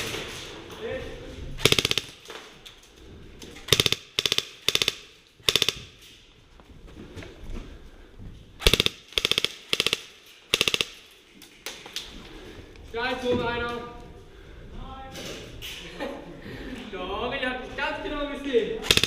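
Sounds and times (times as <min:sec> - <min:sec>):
airsoft guns firing automatic: 0:01.6 - 0:02.3, 0:03.7 - 0:06.0, 0:08.6 - 0:11.2.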